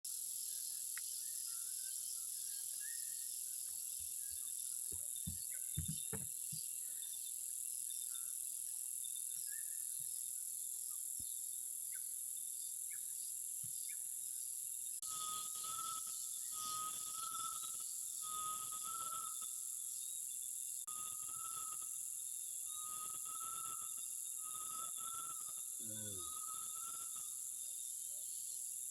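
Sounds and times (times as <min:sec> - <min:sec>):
insect chorus: 0:00.1 - 0:28.9
bird chirps: 0:15.0 - 0:21.9, 0:22.6 - 0:28.6.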